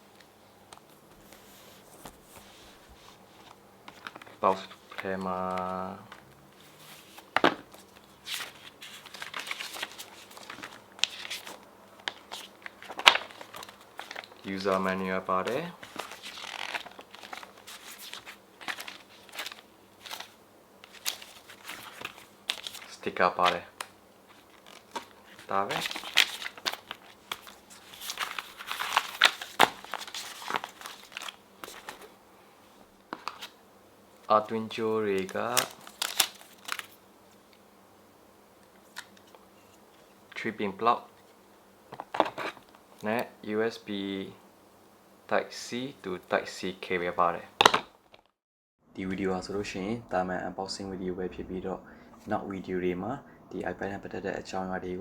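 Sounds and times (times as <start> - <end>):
paper and cardboard rustling: 0.8 - 32.2, 33.1 - 33.6, 34.2 - 37.4, 41.1 - 43.2.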